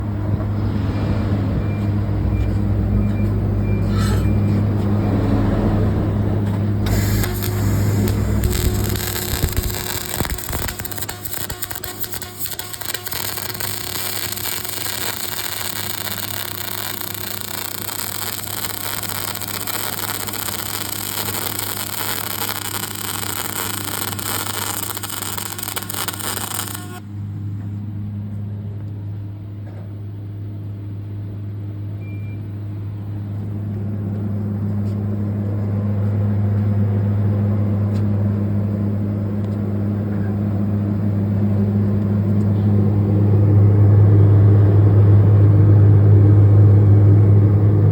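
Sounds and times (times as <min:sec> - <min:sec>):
welding machine electrical hum: 0:04.0 - 0:27.4
loud hiss: 0:06.8 - 0:27.0.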